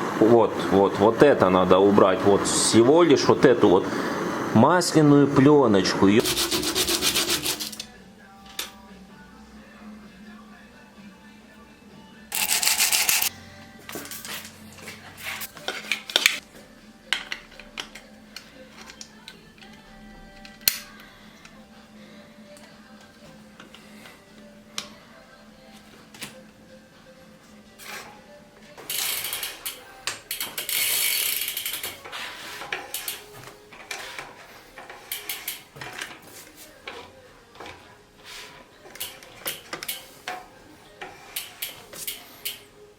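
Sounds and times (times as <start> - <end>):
rubbing and scraping: 6.2 - 7.9, 30.6 - 35.1
bicycle freewheel ratchet clicking: 12.3 - 13.3, 28.9 - 32.0, 32.9 - 33.2, 35.1 - 35.6.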